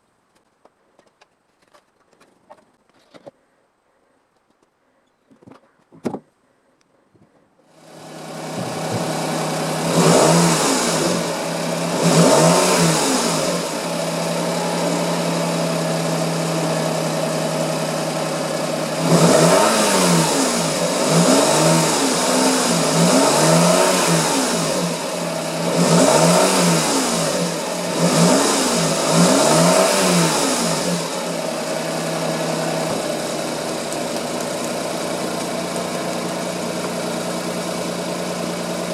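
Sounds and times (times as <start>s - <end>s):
car engine idling and revving: 7.6s - 38.9s.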